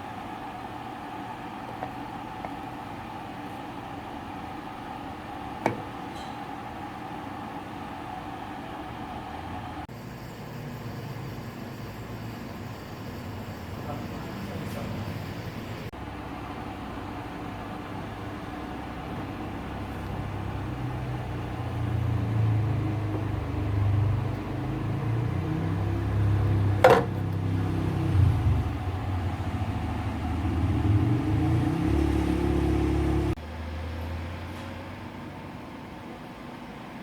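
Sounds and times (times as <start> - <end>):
service machine low hum: 0.0 - 33.4.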